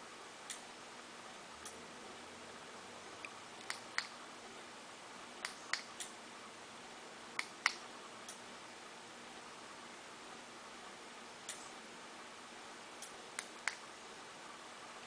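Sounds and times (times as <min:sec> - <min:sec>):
small sharp clicks: 0:03.2 - 0:04.2, 0:05.4 - 0:06.2, 0:07.4 - 0:08.4, 0:13.0 - 0:13.8.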